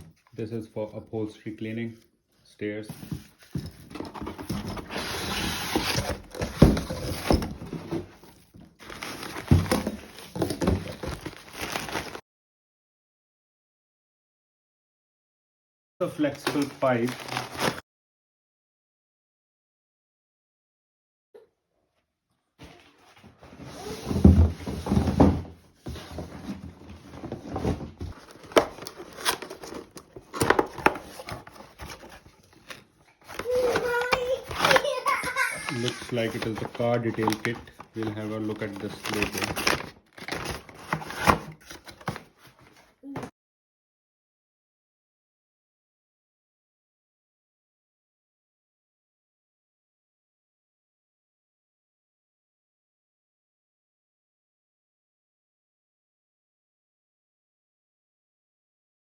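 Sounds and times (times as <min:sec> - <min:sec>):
packaging rustling and crinkling: 0:02.9 - 0:12.2, 0:16.5 - 0:17.8, 0:25.9 - 0:42.9.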